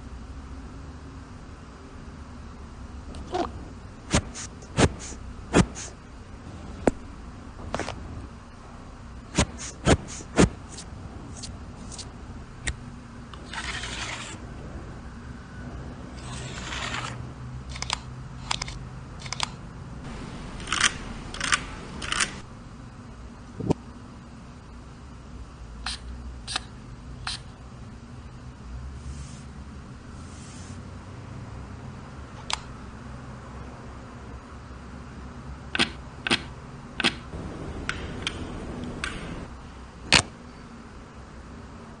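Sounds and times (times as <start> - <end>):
faint steady hum: 0.0 - 42.0
handling scrape: 13.4 - 14.4, 30.2 - 30.8
sharp tool clicks: 35.8 - 37.2, 37.9 - 39.3.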